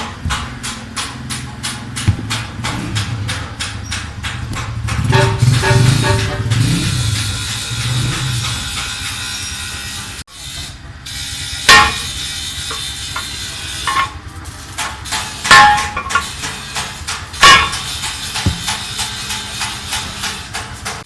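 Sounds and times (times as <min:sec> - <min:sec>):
hammer blows with metallic ring: 0:00.0 - 0:10.1, 0:11.6 - 0:14.2, 0:14.8 - 0:21.0.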